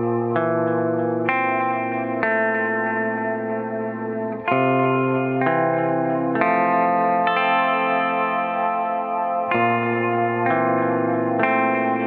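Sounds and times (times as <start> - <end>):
distorted electric guitar chords: 0.0 - 12.0.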